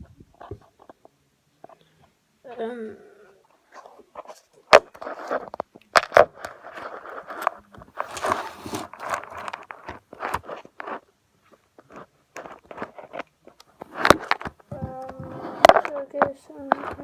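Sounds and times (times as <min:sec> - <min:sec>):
play-doh and plastic pieces handled: 0:03.6 - 0:17.0.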